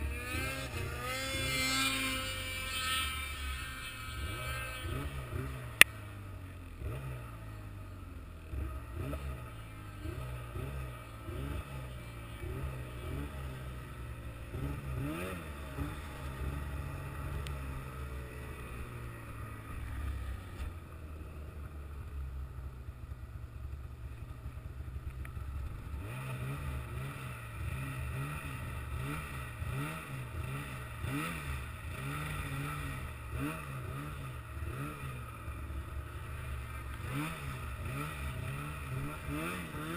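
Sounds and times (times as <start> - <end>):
vehicle engine revving: 0.0 - 7.8, 8.4 - 20.8, 25.3 - 39.9.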